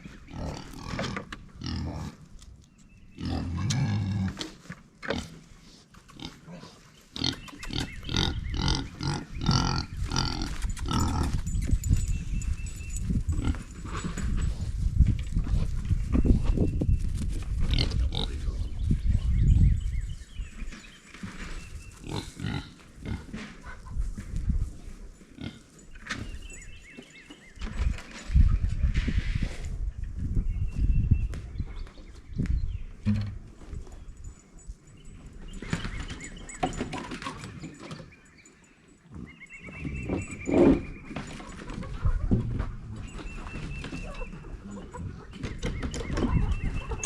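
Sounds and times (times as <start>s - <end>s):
pig grunting: 0.3s - 2.2s, 3.2s - 5.4s, 6.2s - 11.4s.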